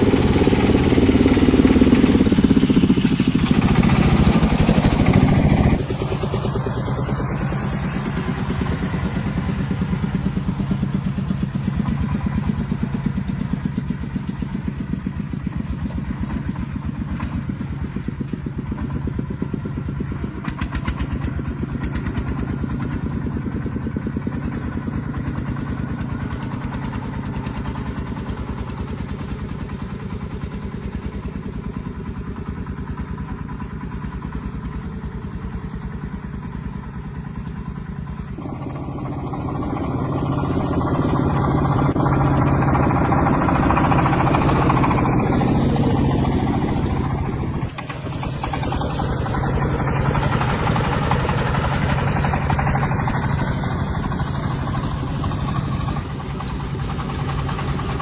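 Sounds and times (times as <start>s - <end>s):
tractor engine chugging: 0.0s - 58.0s.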